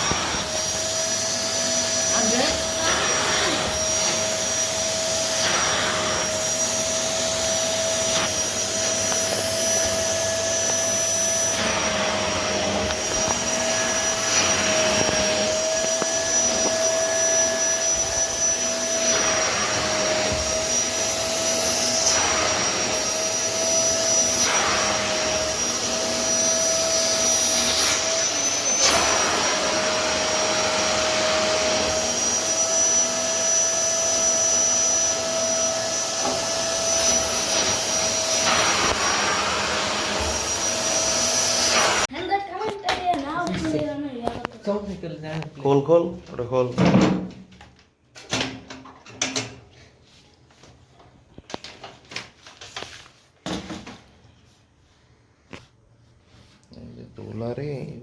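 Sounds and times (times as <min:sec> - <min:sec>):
vacuum cleaner motor whine: 0:00.0 - 0:42.1.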